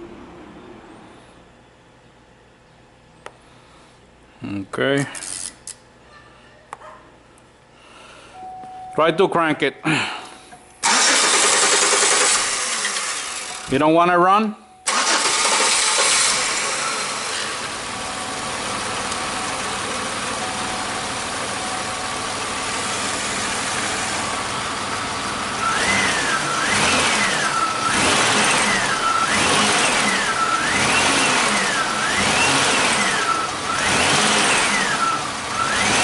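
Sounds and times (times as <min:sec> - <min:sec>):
car engine running and revving: 0:15.4 - 0:36.0.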